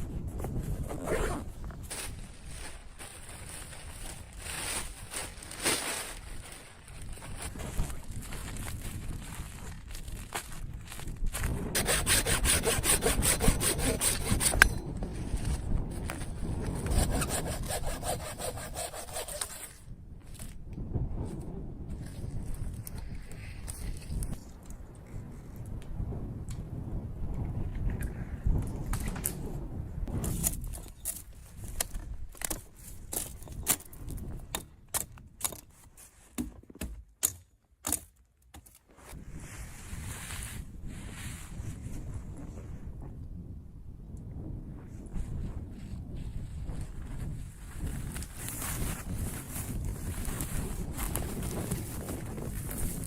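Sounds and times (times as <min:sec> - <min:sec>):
hand saw cutting wood: 0:11.8 - 0:14.8, 0:16.8 - 0:19.8.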